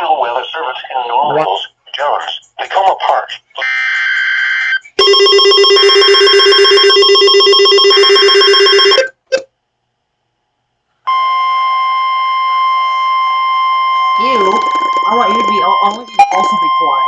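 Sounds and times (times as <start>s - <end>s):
steady alarm tone: 3.6s - 9.3s, 11.1s - 17.0s
data tones burst: 3.6s - 9.4s, 12.5s - 17.0s
pulsing ringing alert tone: 5.0s - 9.1s.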